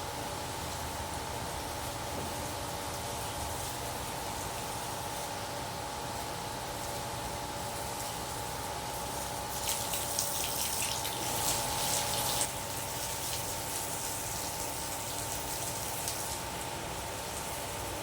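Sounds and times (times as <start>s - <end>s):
steady hum: 0.0s - 18.0s
running water: 8.9s - 18.0s.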